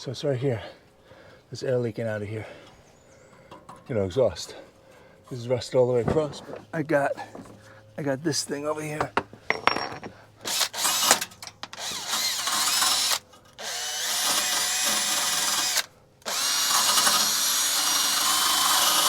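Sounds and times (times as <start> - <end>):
power drill running: 10.4 - 19.0.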